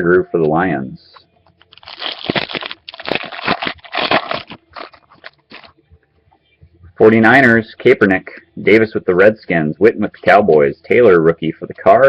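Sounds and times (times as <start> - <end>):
plastic wrapper crinkling: 1.6 - 5.8.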